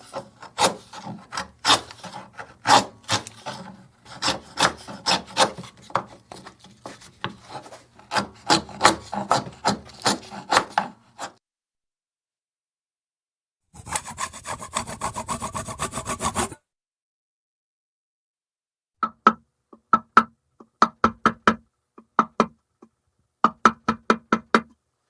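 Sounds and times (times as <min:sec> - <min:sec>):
blade carving wood: 0:00.0 - 0:11.4, 0:13.8 - 0:16.6.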